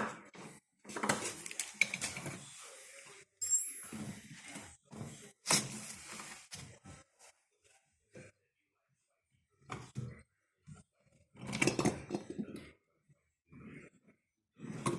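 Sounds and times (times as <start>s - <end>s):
ringing metallic clink: 3.4s - 3.9s
metal tools clinking: 3.4s - 4.0s.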